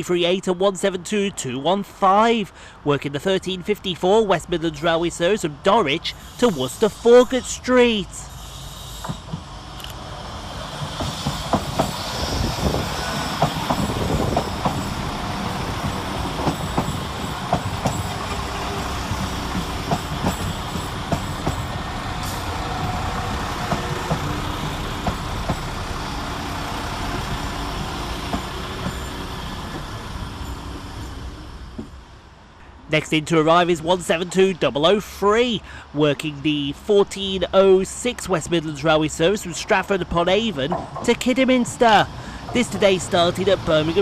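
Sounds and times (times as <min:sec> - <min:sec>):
diesel train rumbling: 0:00.0 - 0:44.0
wheels clicking over rail joints: 0:10.7 - 0:30.6, 0:40.5 - 0:44.0.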